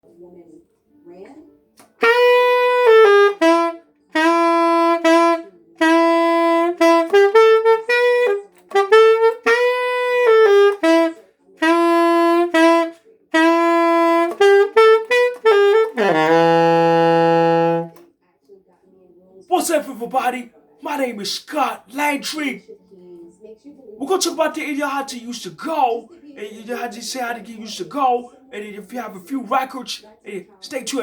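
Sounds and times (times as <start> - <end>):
alto saxophone jazz phrases: 1.8 - 18.0.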